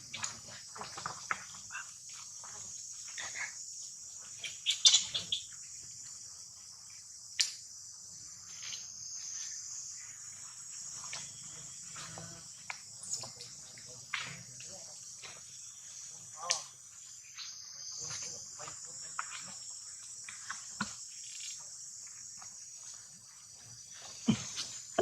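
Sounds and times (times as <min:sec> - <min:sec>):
high-pitched insect chorus: 0:00.0 - 0:25.0.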